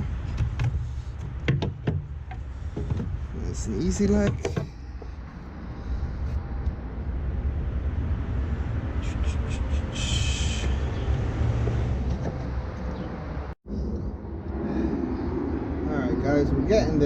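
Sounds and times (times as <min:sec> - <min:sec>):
steady low rumble: 0:13.2 - 0:17.0.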